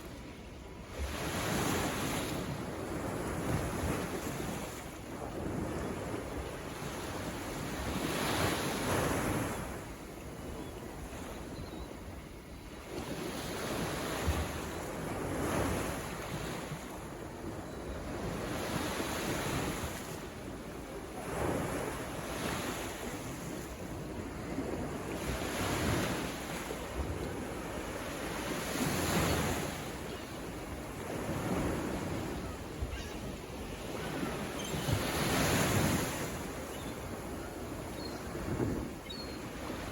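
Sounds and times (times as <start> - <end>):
low rumble of surf: 0.0 - 39.9
ocean waves breaking: 0.9 - 39.9.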